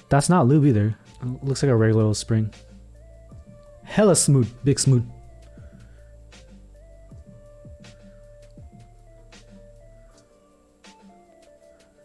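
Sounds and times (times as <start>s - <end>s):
quiet background music: 0.0s - 12.0s.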